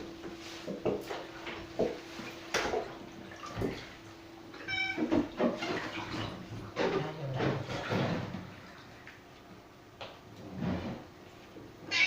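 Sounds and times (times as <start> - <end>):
water splashing: 0.8 - 9.1
cat meowing: 4.6 - 5.1.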